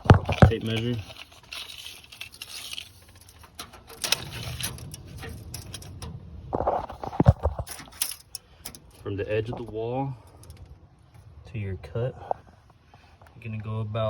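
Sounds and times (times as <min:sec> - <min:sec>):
tape measure rattling and clicking: 0:00.0 - 0:09.0.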